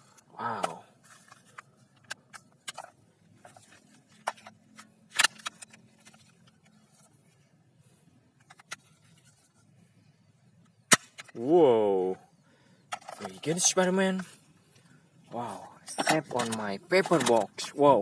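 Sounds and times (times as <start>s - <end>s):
handling clicks and knocks: 15.8s - 17.8s.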